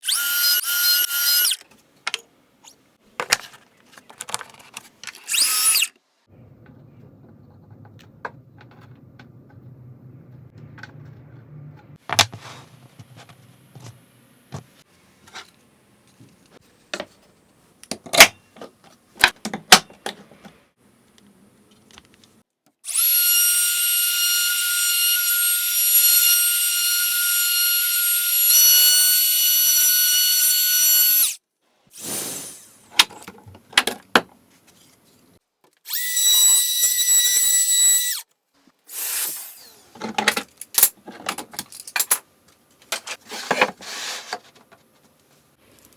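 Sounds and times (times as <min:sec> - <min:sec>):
power drill whining: 0:00.0 - 0:01.6, 0:35.9 - 0:38.2.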